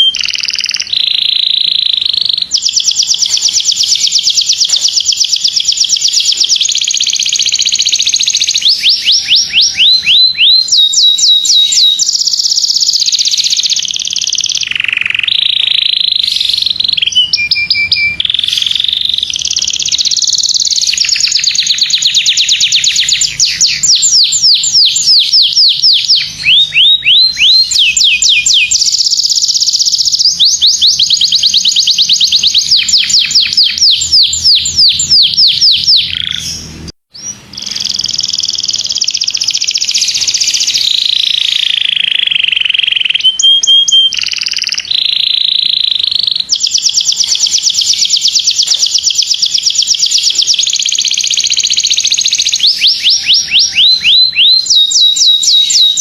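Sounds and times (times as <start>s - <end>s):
canary singing trills: 0.0s - 56.0s.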